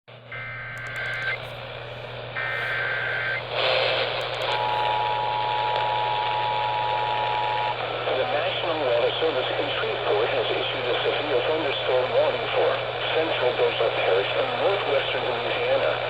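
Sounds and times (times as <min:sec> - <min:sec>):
radio static: 0:00.1 - 0:16.0
low hum: 0:00.2 - 0:08.1
digital data tones: 0:00.4 - 0:01.5, 0:02.4 - 0:03.5.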